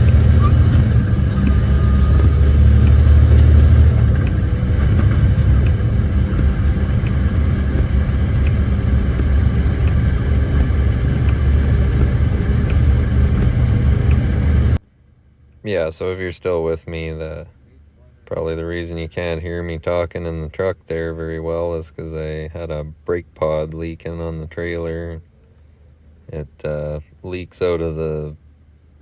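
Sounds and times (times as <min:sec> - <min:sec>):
air hissing from valve: 0:00.0 - 0:14.8
truck engine rumbling: 0:00.0 - 0:14.8.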